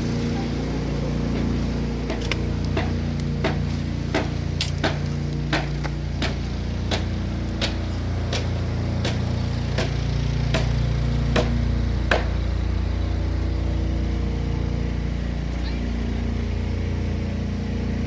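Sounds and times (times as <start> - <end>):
engine running: 0.0 - 18.0
sharp knocks: 2.1 - 12.4.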